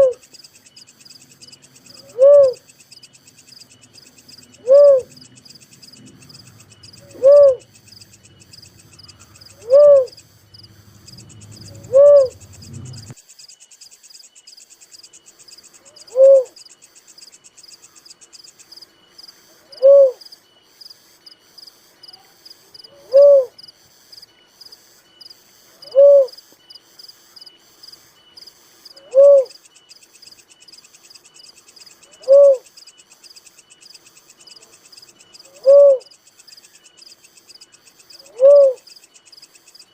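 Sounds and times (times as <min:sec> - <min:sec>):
dove cooing: 0:00.0 - 0:00.2, 0:01.8 - 0:02.7, 0:04.4 - 0:13.2, 0:15.8 - 0:16.6, 0:19.6 - 0:20.2, 0:22.8 - 0:23.6, 0:25.8 - 0:26.4, 0:29.0 - 0:29.6, 0:32.0 - 0:32.7, 0:35.4 - 0:36.1, 0:38.2 - 0:38.8
high insect chirring: 0:00.0 - 0:39.9.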